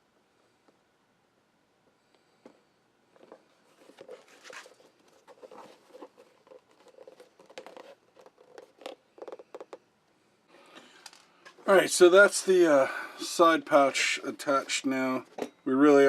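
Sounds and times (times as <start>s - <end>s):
leather pieces clicking and rustling: 3.2s - 9.8s.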